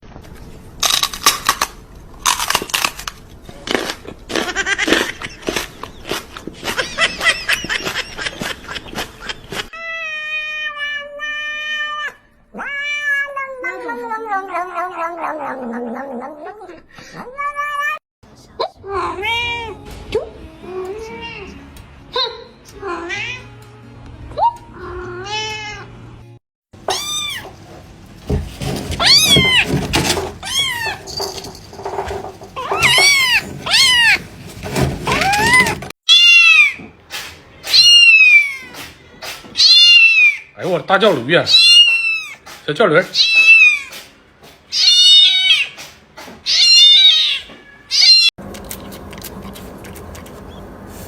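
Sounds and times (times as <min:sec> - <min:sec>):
cats meowing: 0:09.8 - 0:18.0, 0:26.8 - 0:27.9, 0:28.6 - 0:40.6, 0:41.5 - 0:42.4, 0:43.0 - 0:44.1, 0:44.7 - 0:45.8, 0:46.4 - 0:48.3
cat meowing loudly: 0:35.2 - 0:36.8, 0:37.6 - 0:40.5, 0:46.5 - 0:48.3.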